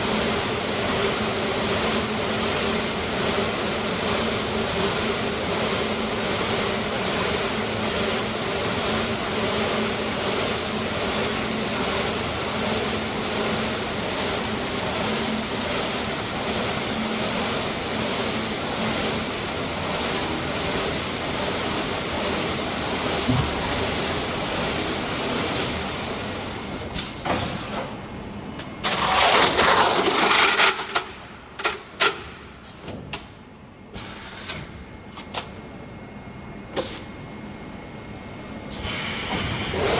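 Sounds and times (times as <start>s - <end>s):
machine mechanical whir: 0.0s - 33.2s
loud air hiss: 34.0s - 34.6s, 38.7s - 39.9s.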